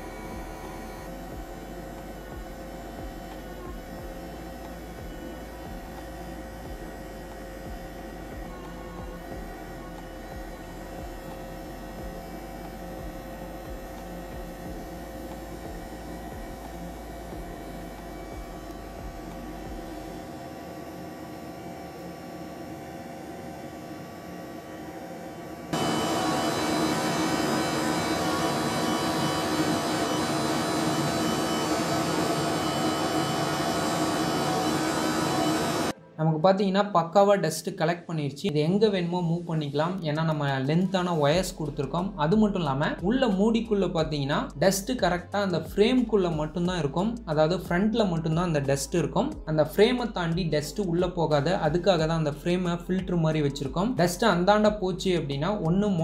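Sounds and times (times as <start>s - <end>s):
vacuum cleaner motor humming: 0.0s - 36.0s.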